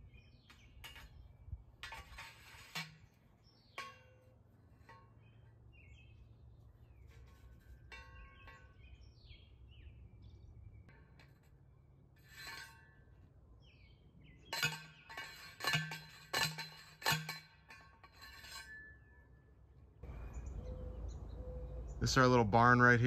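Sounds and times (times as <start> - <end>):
birds chirping: 5.1 - 11.1, 20.0 - 23.0.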